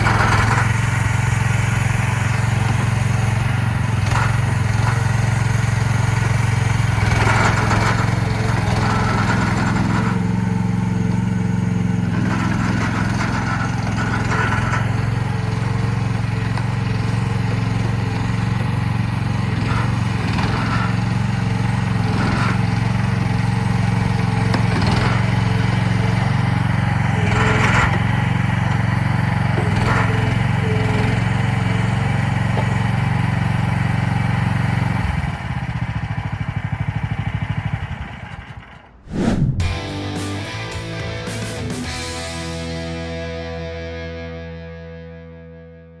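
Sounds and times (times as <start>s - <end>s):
small diesel engine running: 0.0s - 43.4s
short sharp noises: 39.0s - 42.1s.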